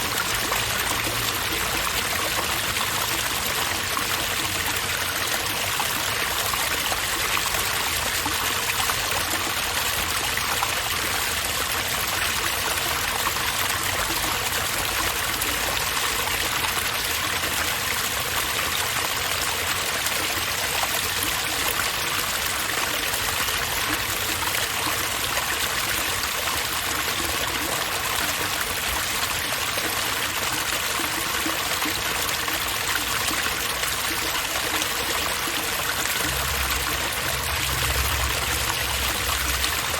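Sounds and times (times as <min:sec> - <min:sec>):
running water from fixture: 0:34.4 - 0:39.9.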